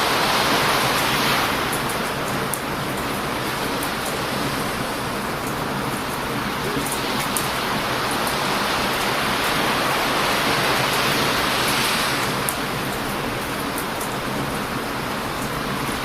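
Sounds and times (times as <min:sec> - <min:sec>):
ocean surf breaking on beach: 0:00.0 - 0:16.0.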